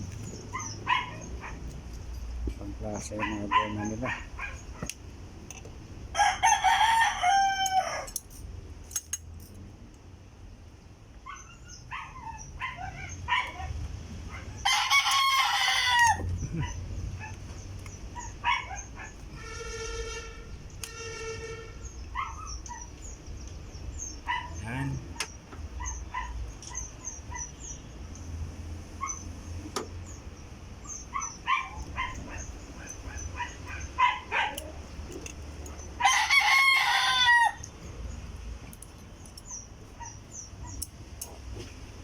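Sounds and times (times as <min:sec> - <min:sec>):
rooster crowing: 0:06.1 - 0:08.2, 0:14.6 - 0:16.4, 0:36.0 - 0:37.7.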